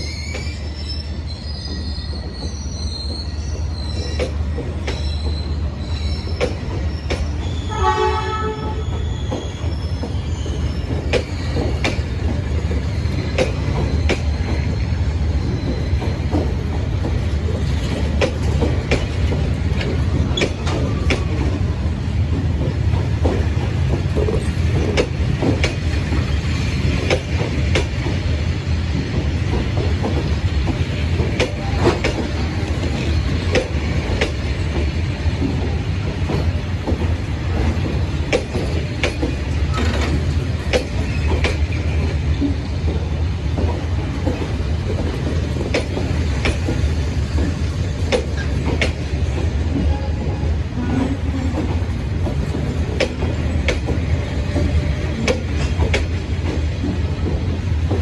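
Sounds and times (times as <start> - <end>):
train rumbling along track: 0.0 - 58.0
wheels clicking over rail joints: 29.0 - 50.0, 51.5 - 58.0.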